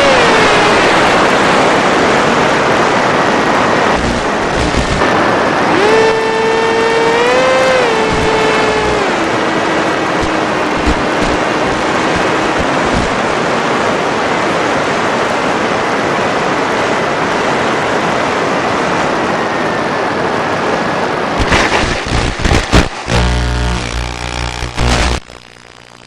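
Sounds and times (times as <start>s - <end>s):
electric motor tone: 0.0s - 0.8s, 3.9s - 5.0s, 5.7s - 13.1s, 21.4s - 26.0s.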